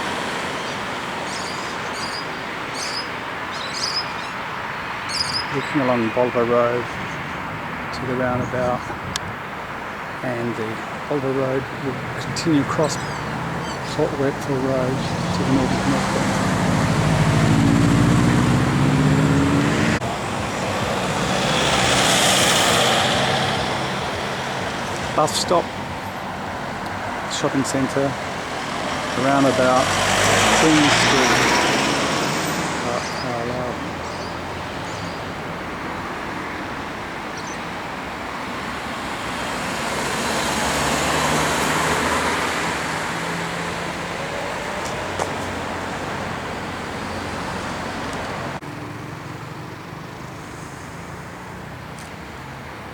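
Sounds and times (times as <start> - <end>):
road traffic noise: 0.0 - 52.9
tyre noise of passing vehicle: 0.0 - 52.9
vehicle engine running: 11.2 - 22.1.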